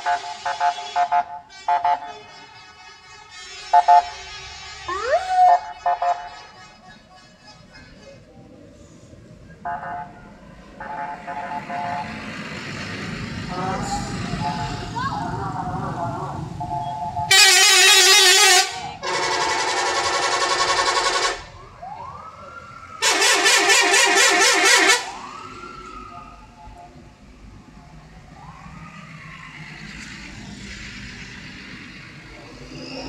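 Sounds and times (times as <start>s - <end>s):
multi-tone bus horn blasts: 0.0s - 8.4s, 9.6s - 12.2s, 13.4s - 15.0s, 16.6s - 21.5s, 23.0s - 25.2s.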